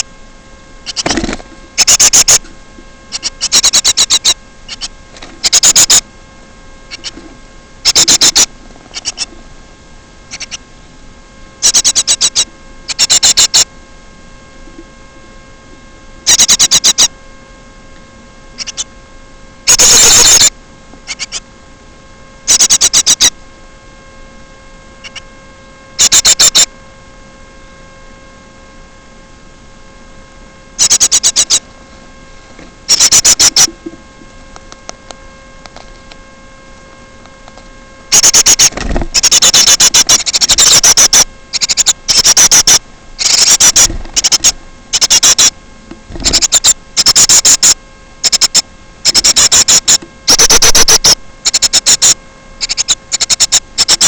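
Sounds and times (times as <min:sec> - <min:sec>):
electrical mains hum: 0:00.0 - 0:54.0.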